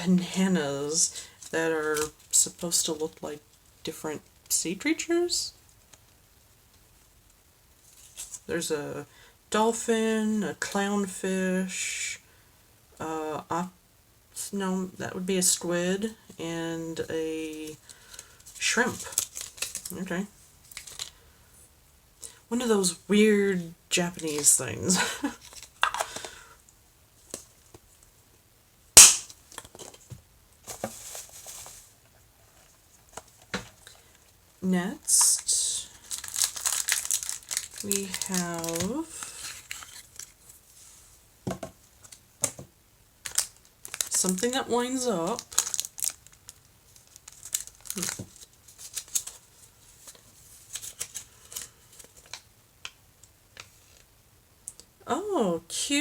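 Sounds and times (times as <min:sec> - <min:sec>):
packaging rustle: 0:17.9 - 0:20.0, 0:20.6 - 0:21.2, 0:29.5 - 0:34.4, 0:35.1 - 0:40.6, 0:43.2 - 0:44.6, 0:45.2 - 0:52.5
plastic snap: 0:29.0 - 0:29.7.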